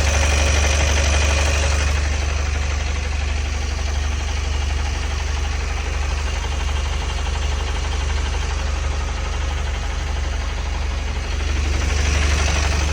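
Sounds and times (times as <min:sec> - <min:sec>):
van engine humming: 0:00.0 - 0:12.9.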